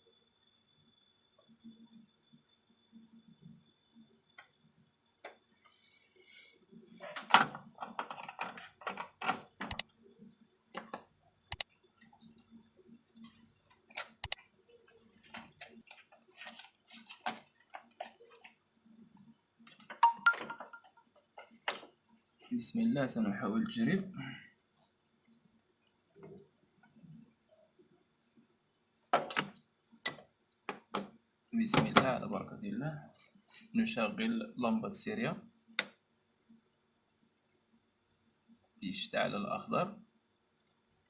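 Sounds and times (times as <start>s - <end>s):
metal parts and tools clinking: 19.7s - 21.0s.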